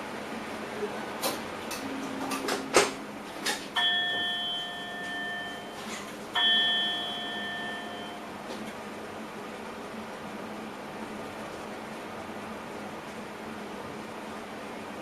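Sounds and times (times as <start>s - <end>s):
bell-like chime: 3.8s - 5.8s, 6.4s - 8.2s.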